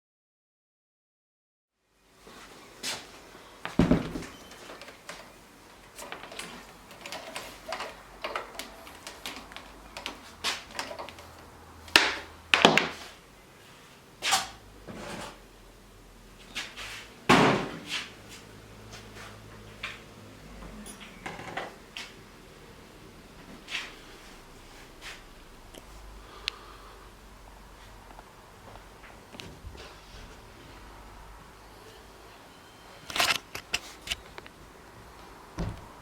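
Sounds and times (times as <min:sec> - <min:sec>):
hard objects knocking and clunking: 0:03.7 - 0:05.2, 0:35.6 - 0:36.0
loud thuds: 0:35.6 - 0:36.0.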